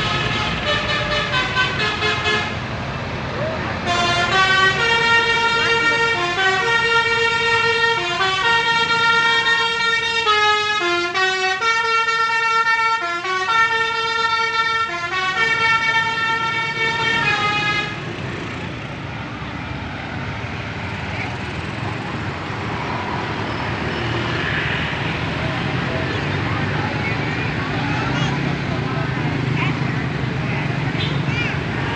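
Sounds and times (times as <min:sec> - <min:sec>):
bus horn playing a tune: 0:00.0 - 0:02.6, 0:03.8 - 0:18.1.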